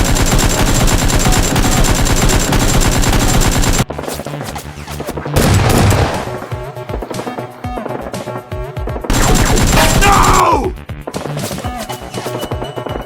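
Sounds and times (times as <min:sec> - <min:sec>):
machine-gun fire: 0:00.0 - 0:03.9, 0:05.4 - 0:06.4, 0:09.1 - 0:10.4
background music: 0:00.7 - 0:13.0.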